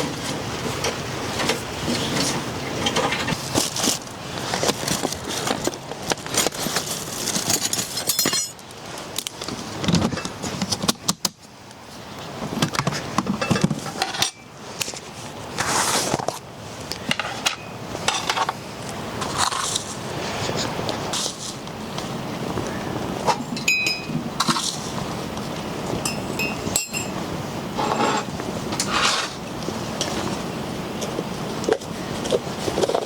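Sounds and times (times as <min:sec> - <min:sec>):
rustling: 0:00.0 - 0:10.7, 0:14.6 - 0:16.4
light metal clinking: 0:23.6 - 0:24.2, 0:26.0 - 0:27.2.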